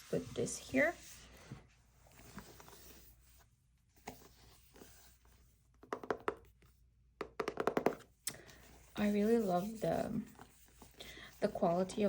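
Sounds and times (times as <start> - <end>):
hands scraping cardboard: 8.9 - 12.0.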